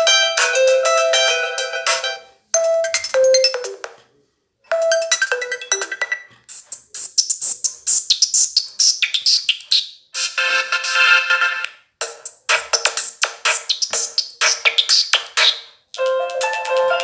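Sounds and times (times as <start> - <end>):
bright percussive ringtone: 0.0 - 3.8, 4.7 - 6.3
synthesized ringtone melody: 0.0 - 3.8, 4.7 - 6.4, 10.2 - 11.7, 16.0 - 17.0.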